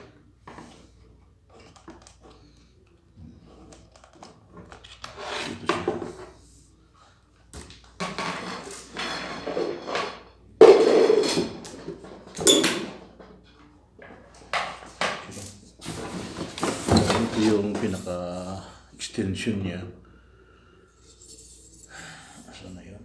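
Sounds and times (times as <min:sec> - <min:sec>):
plastic parts clattering: 0:07.8 - 0:18.3.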